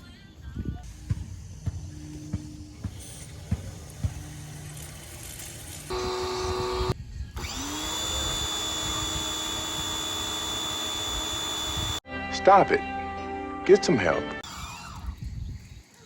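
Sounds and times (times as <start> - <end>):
pressure washer motor whine: 4.0 - 12.0.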